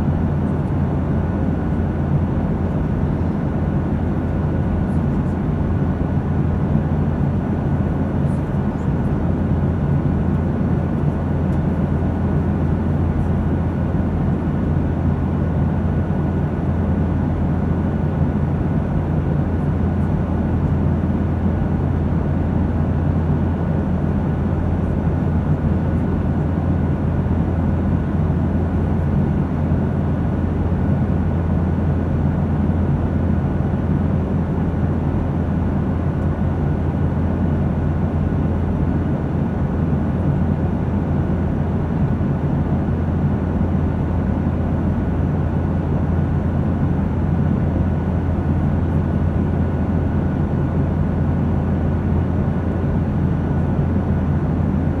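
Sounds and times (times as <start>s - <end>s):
airliner engine drone: 0.0s - 55.0s.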